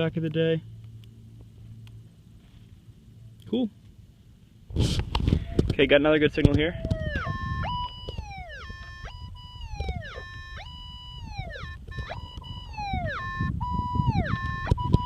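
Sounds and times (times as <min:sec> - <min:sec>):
metal detector beeps: 0:06.9 - 0:15.0.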